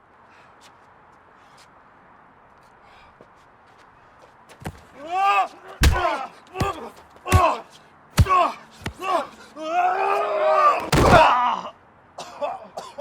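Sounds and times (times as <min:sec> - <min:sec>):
punches landing: 0:05.8 - 0:07.6, 0:08.2 - 0:09.1, 0:10.8 - 0:11.4.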